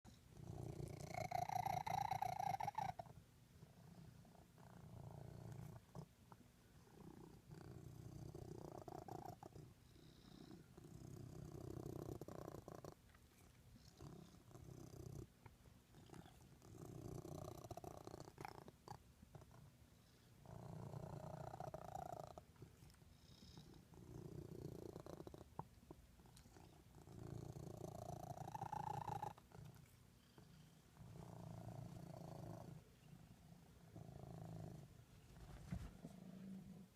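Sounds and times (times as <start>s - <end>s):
cat purring: 0.1s - 36.9s.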